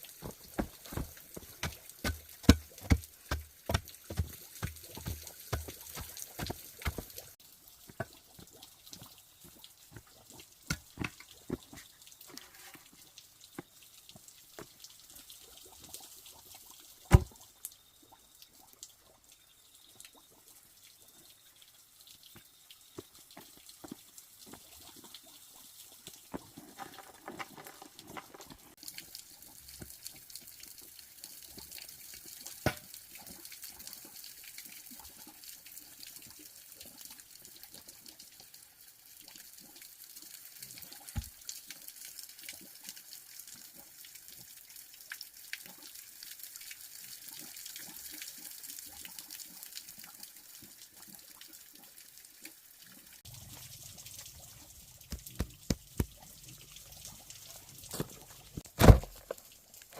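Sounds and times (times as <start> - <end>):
water dripping and running: 0.0 - 59.9
handling clicks and knocks: 0.2 - 7.2, 10.7 - 11.7, 55.1 - 56.2.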